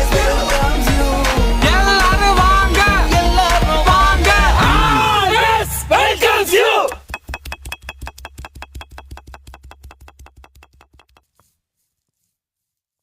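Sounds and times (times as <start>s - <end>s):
steady bass tone: 1.0s - 8.2s
fast clicking beat: 6.8s - 11.4s.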